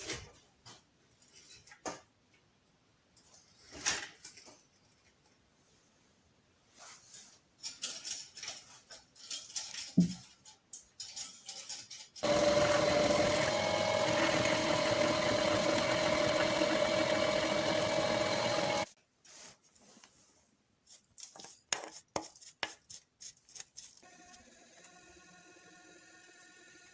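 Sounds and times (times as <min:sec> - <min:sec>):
electric motor whining: 0:12.2 - 0:18.9.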